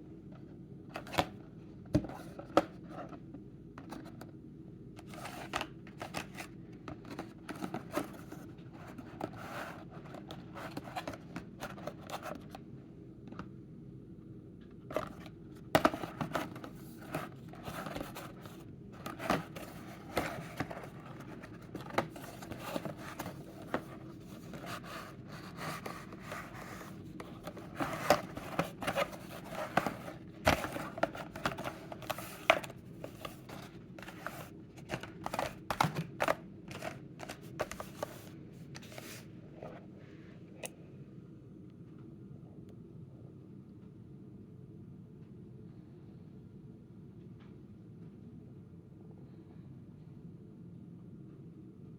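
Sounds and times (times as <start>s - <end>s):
cardboard and plastic packaging crinkling: 14.9s - 39.2s.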